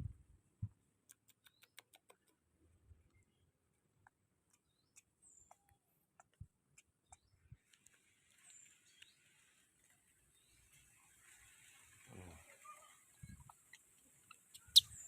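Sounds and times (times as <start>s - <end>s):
high bird chirps: 13.2s - 15.0s.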